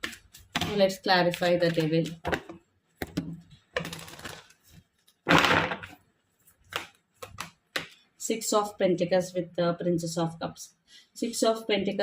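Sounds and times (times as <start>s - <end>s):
cards being shuffled: 6.5s - 8.0s.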